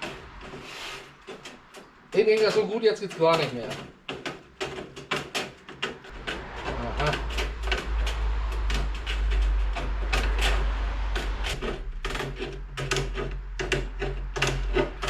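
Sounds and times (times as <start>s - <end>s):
steady low hum: 6.1s - 15.0s.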